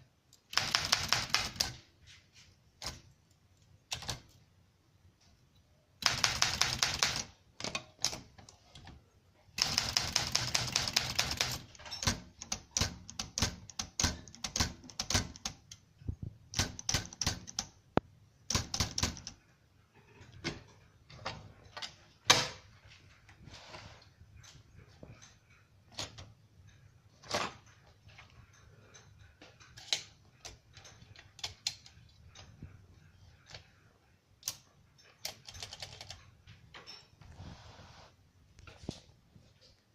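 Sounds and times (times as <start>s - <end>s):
typewriter keystrokes: 0.5s - 1.8s, 2.8s - 3.1s, 3.9s - 4.4s, 6.0s - 9.0s, 9.6s - 15.8s, 16.5s - 17.8s, 18.5s - 19.4s, 35.2s - 36.2s.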